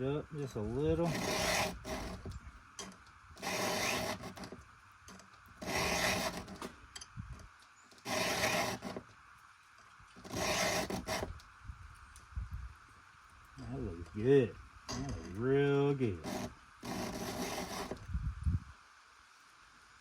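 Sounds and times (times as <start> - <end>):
hand file rasping on metal: 1.0 - 2.4, 3.4 - 4.6, 5.6 - 6.7, 8.0 - 9.0, 10.3 - 11.3, 16.2 - 18.0.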